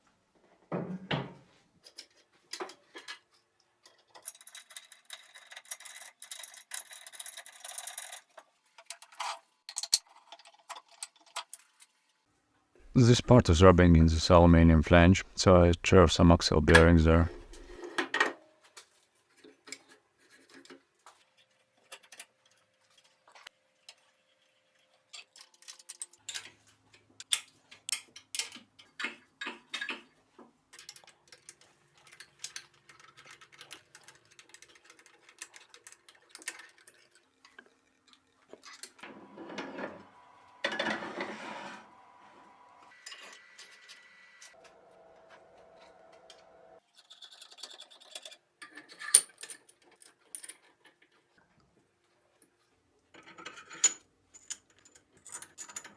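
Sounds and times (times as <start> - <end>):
metal parts and tools clinking: 1.8 - 11.9, 25.1 - 26.7, 46.9 - 51.0.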